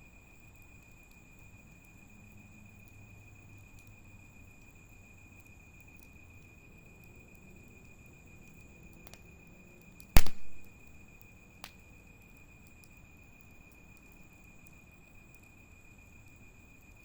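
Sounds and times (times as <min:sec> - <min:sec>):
faint ticks: 0:00.2 - 0:17.0
bonfire wood popping: 0:10.2 - 0:11.9.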